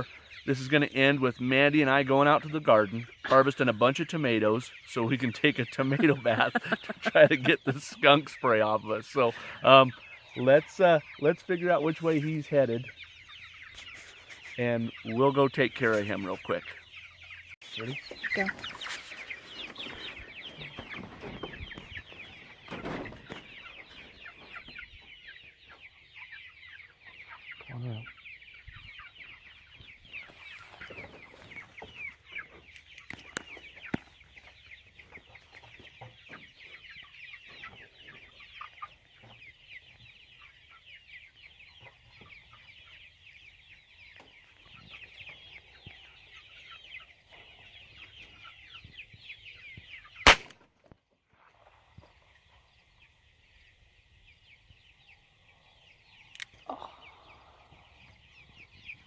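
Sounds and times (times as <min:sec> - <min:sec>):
chickens cheeping and clucking: 0:00.0 - 0:59.0
gunshot: 0:50.3 - 0:50.6.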